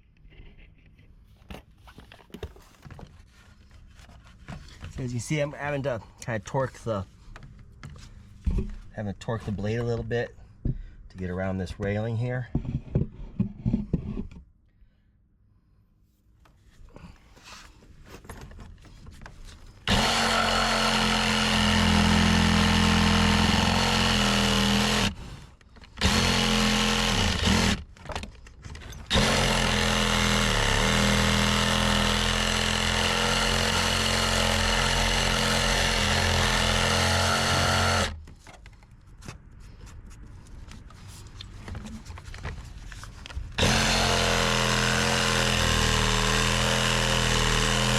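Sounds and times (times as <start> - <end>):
reciprocating saw cutting wood: 19.8 - 25.4, 26.0 - 27.8, 29.1 - 38.2, 43.6 - 47.9.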